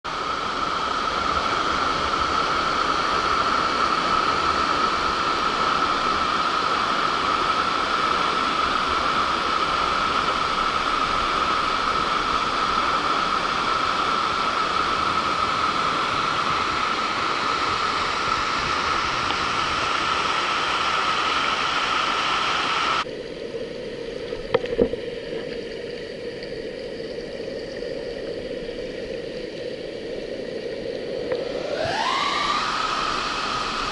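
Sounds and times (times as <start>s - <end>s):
waterfall rushing: 0.1s - 23.1s, 31.3s - 33.9s.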